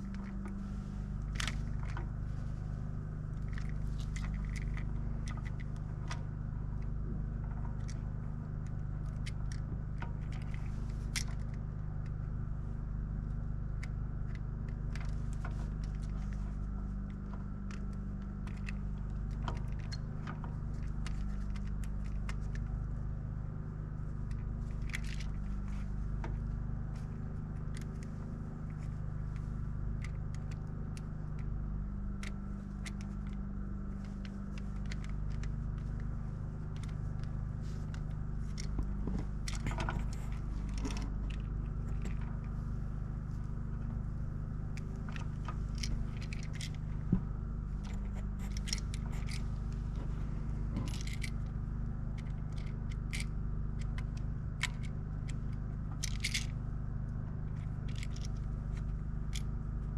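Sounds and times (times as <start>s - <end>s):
objects clicking and scraping: 0.0s - 6.2s, 24.3s - 26.4s, 32.2s - 44.0s, 44.7s - 51.5s, 52.2s - 56.6s, 57.5s - 59.5s
steady low hum: 0.0s - 59.9s.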